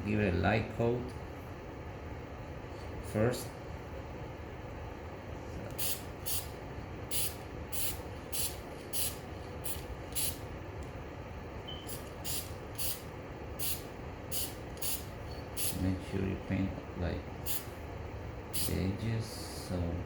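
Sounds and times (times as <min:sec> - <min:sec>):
aerosol paint can spraying: 0:05.7 - 0:10.4, 0:11.9 - 0:15.8, 0:17.4 - 0:17.7, 0:18.6 - 0:18.8.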